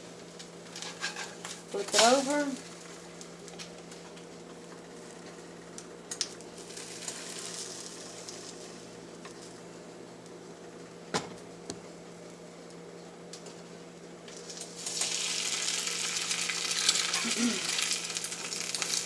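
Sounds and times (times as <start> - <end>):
egg sizzling in a skillet: 0.3 - 4.0, 6.1 - 9.6, 14.2 - 19.0.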